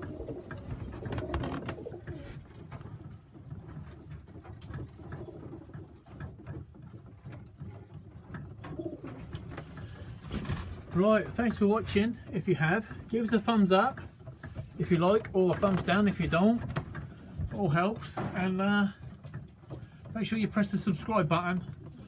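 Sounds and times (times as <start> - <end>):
pigeons cooing: 0.0 - 6.2, 8.6 - 10.2.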